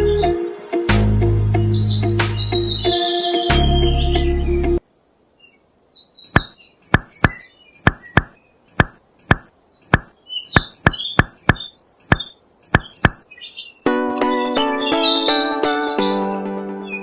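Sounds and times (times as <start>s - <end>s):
high bird-like chirps: 5.4s - 13.8s
sharp short knocks: 6.3s - 13.2s.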